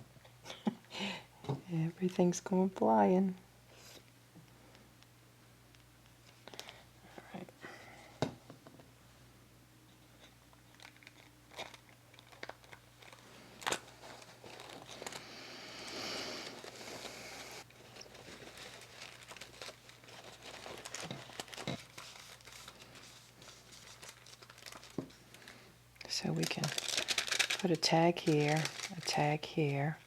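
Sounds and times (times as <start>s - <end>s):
paper crinkling and tapping: 10.7s - 15.2s, 17.7s - 25.3s, 26.4s - 29.5s.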